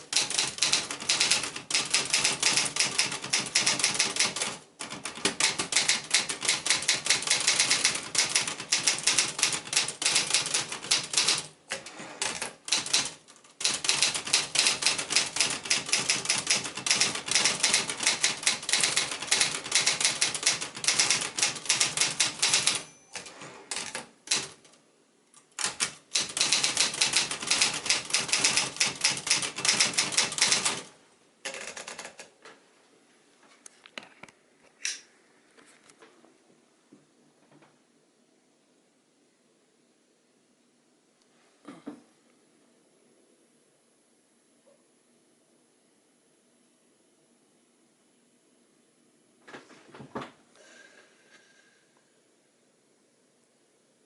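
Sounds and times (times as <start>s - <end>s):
manual typewriter key strikes: 0.0s - 24.6s, 25.6s - 30.8s.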